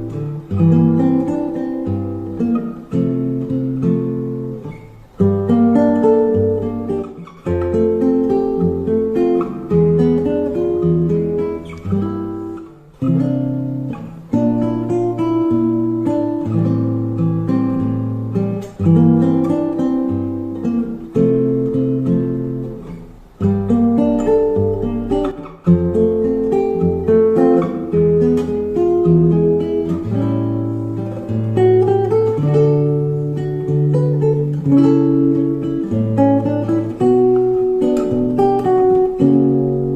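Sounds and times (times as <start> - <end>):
acoustic guitar playing: 0.0 - 39.9.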